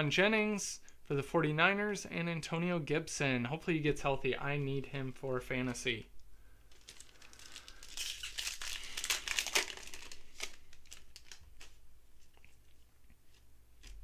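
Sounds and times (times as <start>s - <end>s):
plastic wrapper crinkling and tearing: 6.7s - 14.0s.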